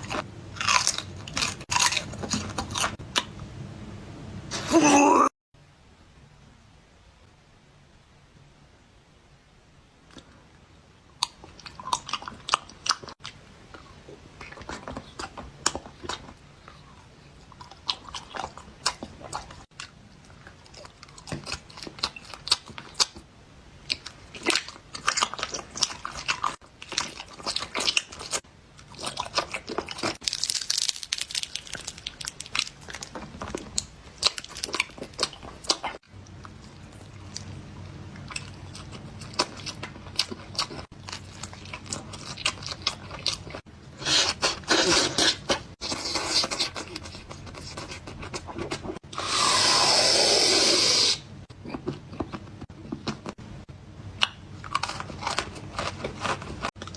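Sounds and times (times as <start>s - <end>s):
crunchy bites: 0.0s - 3.3s, 29.0s - 36.0s
wet chewing clicks: 17.4s - 49.0s.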